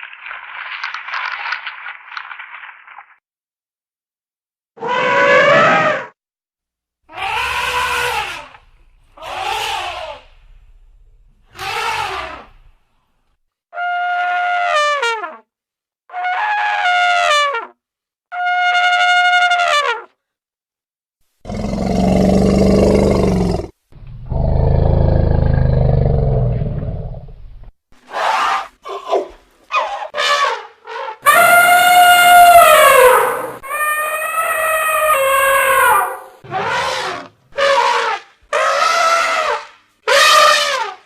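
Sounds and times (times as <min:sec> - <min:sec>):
elephant trumpeting: 0:07.1 - 0:10.6, 0:11.5 - 0:12.6, 0:29.7 - 0:41.0
elephant deep roars: 0:21.5 - 0:27.4.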